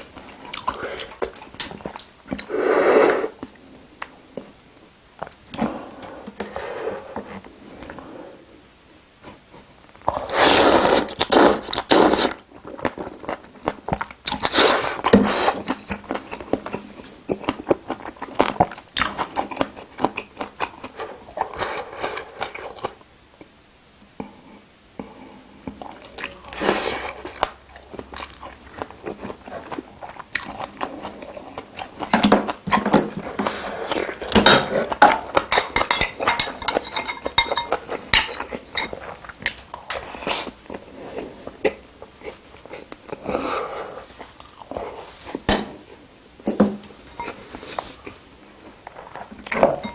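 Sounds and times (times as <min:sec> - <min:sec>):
food crunching: 0:25.7 - 0:45.9
chewing and biting food: 0:27.0 - 0:40.8.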